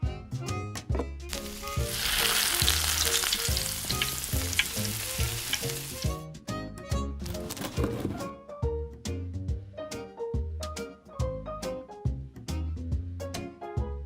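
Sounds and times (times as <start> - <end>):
background music: 0.0 - 14.0
donuts sizzling in hot oil: 1.3 - 6.2.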